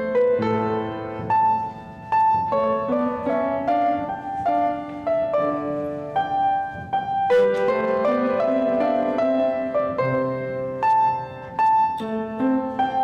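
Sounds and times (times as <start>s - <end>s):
piano melody over chords: 0.0s - 13.0s.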